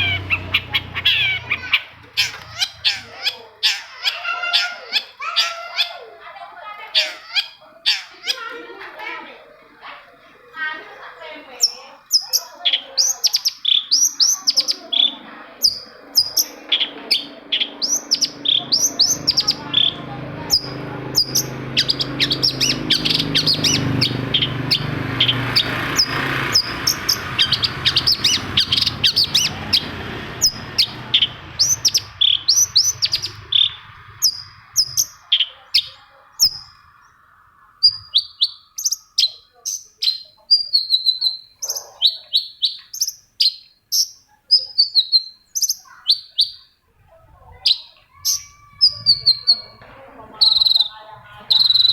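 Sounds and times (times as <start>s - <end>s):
shrike calling: 0.0s - 46.8s, 47.4s - 51.9s
low droning rumble: 15.1s - 38.2s.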